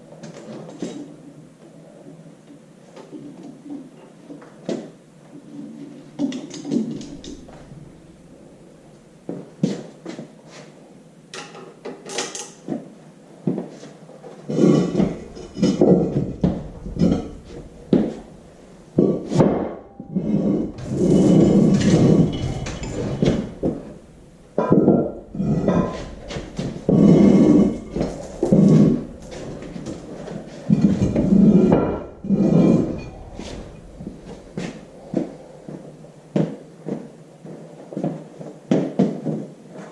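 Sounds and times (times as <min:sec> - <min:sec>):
heavy parts clunking and scraping: 0:06.0 - 0:09.0, 0:13.7 - 0:37.1
clicks and knocks: 0:14.6 - 0:35.4.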